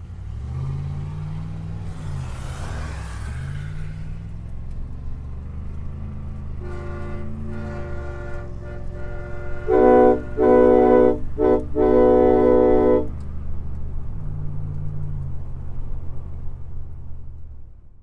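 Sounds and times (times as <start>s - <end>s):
low steady rumble: 6.3s - 18.0s
air horn blasts: 6.6s - 13.2s.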